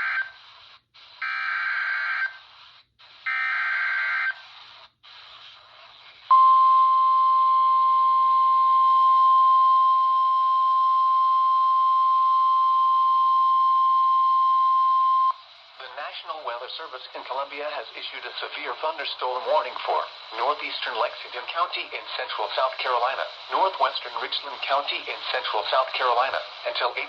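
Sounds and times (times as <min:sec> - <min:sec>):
faint radio static: 0:00.0 - 0:06.4, 0:14.3 - 0:27.0
steady alarm tone: 0:01.2 - 0:02.4, 0:03.3 - 0:04.4
digital data bursts: 0:16.6 - 0:27.0.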